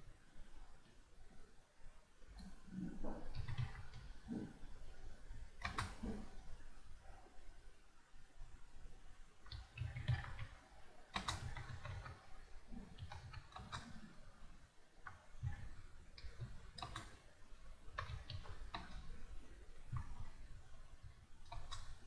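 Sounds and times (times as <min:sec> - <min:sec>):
keyboard keys clicking: 0:03.4 - 0:04.0, 0:09.5 - 0:12.2.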